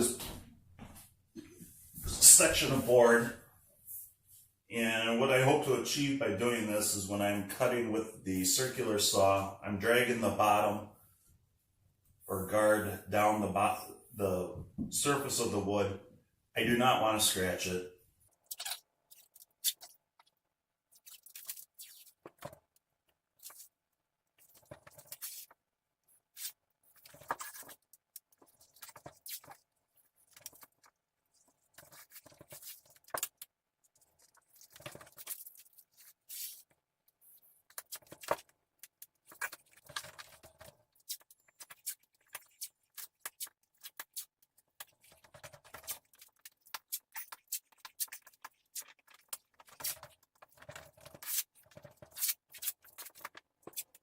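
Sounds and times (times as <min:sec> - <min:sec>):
tape tearing and rasping: 0:41.0 - 0:54.0.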